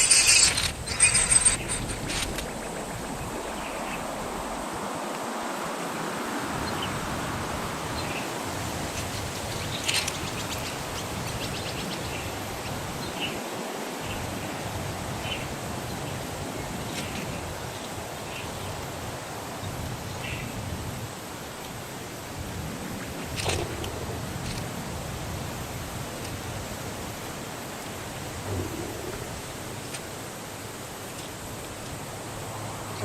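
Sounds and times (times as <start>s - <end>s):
outdoor background hiss: 0.0s - 33.0s.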